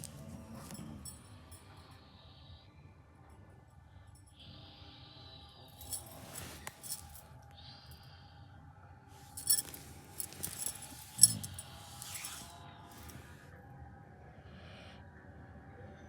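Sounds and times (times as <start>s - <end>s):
small metal pieces jingling: 5.8s - 7.2s, 9.3s - 13.1s.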